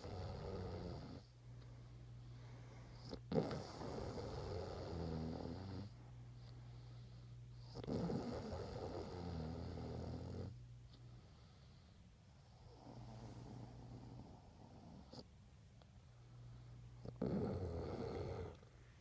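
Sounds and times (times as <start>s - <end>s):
steady low hum: 0.0s - 19.0s
person snoring: 3.0s - 5.9s, 17.0s - 18.6s.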